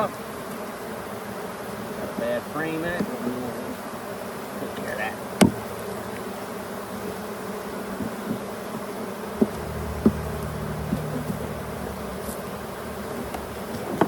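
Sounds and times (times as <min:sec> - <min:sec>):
honeybees buzzing: 0:00.0 - 0:14.0
sharp knocks: 0:05.4 - 0:05.6, 0:09.4 - 0:12.5.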